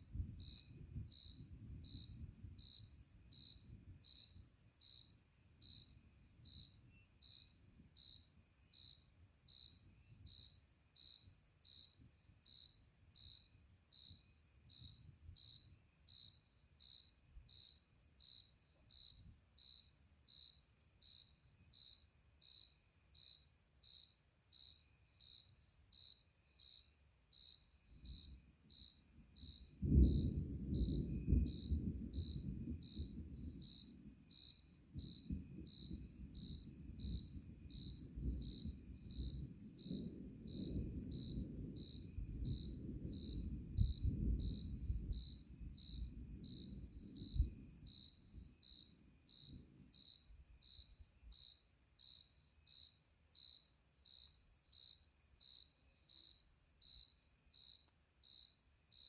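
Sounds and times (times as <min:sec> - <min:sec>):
distant thunder rumbling: 0:00.0 - 0:05.0, 0:29.4 - 0:50.1
cricket chirping: 0:00.0 - 0:59.0.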